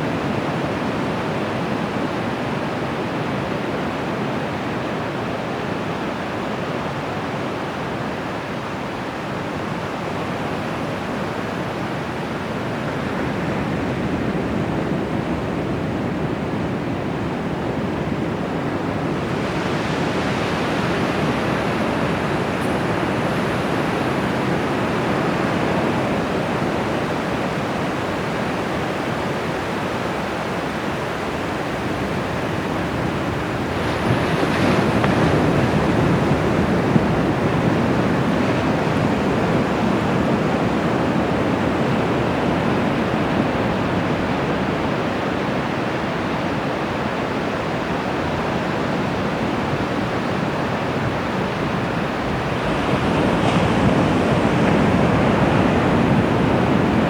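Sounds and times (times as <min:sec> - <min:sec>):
waves breaking: 0:18.4 - 0:45.1, 0:47.4 - 0:57.0.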